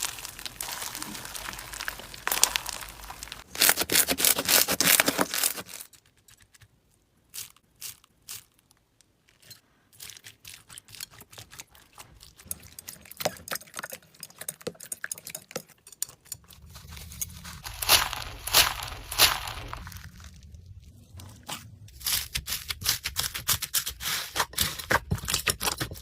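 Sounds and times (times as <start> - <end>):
slime crackling and popping: 0.0 - 6.0, 16.8 - 20.7.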